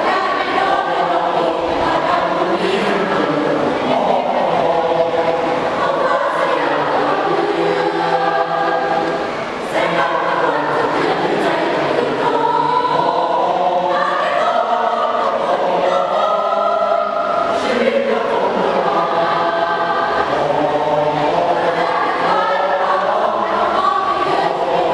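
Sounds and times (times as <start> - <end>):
choir singing in harmony: 0.0 - 24.9.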